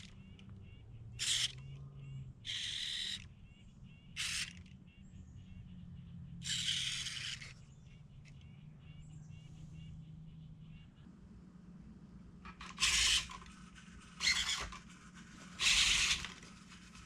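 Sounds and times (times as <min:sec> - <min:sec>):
servo motors whirring: 0:00.0 - 0:00.2, 0:01.2 - 0:01.8, 0:02.4 - 0:03.3, 0:04.1 - 0:04.7, 0:06.4 - 0:07.6, 0:12.5 - 0:17.0.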